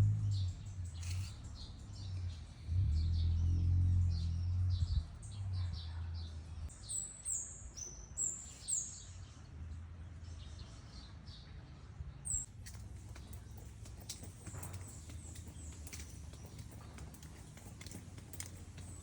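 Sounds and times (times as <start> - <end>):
birds chirping: 0.0 - 2.4, 12.3 - 19.0.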